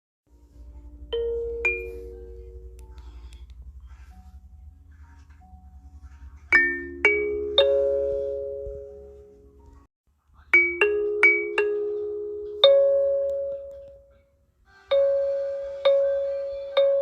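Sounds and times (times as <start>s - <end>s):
kalimba notes ringing: 1.0s - 3.2s, 6.5s - 9.3s, 10.5s - 14.2s, 14.9s - 17.0s.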